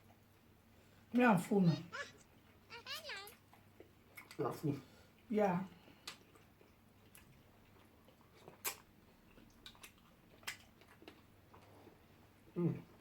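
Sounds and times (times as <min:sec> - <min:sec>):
chewing and mouth clicks: 0:02.4 - 0:04.6, 0:05.9 - 0:13.0.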